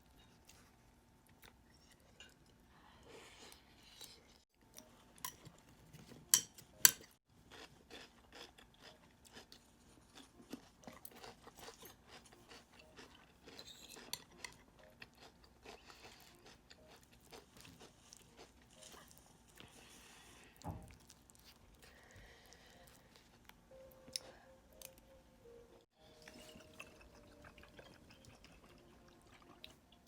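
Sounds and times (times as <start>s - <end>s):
chewing and crunching: 7.1s - 24.9s, 26.0s - 30.0s.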